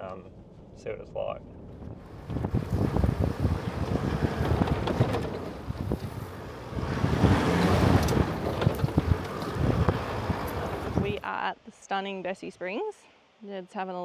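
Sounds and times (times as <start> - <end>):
wind buffeting microphone: 1.6 - 11.3
vehicle on rough dirt track: 1.6 - 11.4.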